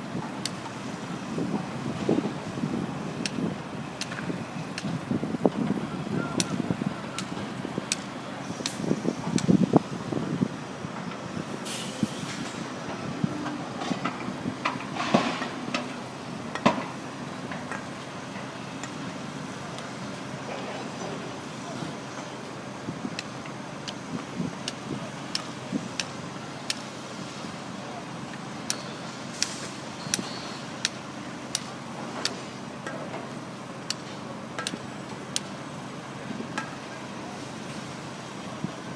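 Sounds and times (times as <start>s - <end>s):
excavator diesel engine running: 0.0s - 38.9s
hydraulic hiss: 11.6s - 12.6s.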